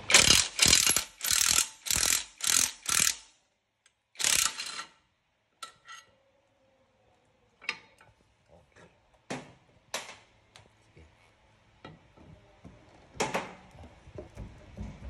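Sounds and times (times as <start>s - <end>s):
socket ratchet clicking: 0.1s - 3.3s.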